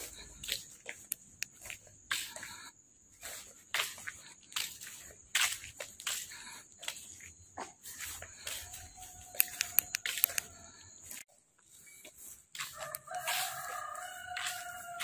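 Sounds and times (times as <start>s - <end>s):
rooster crowing: 8.4s - 10.6s, 12.6s - 15.0s
sharp clicks: 9.3s - 10.6s.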